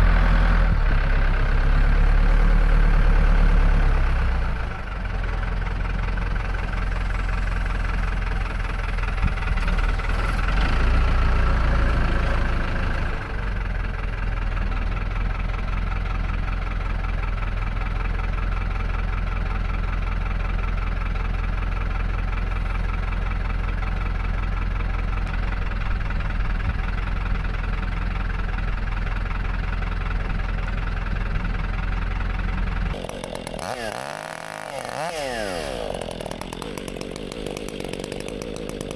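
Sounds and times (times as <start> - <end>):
chainsaw cutting wood: 32.9 - 38.9.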